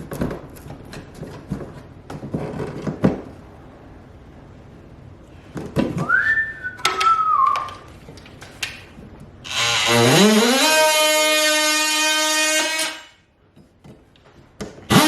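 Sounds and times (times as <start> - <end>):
person whistling: 6.0 - 7.8
tools knocking and clicking: 6.8 - 8.8.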